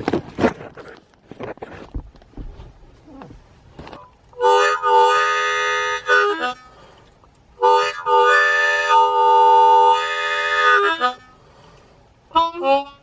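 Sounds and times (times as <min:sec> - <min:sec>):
harmonica playing chords: 0:04.4 - 0:06.9, 0:07.6 - 0:11.6, 0:12.3 - 0:13.0.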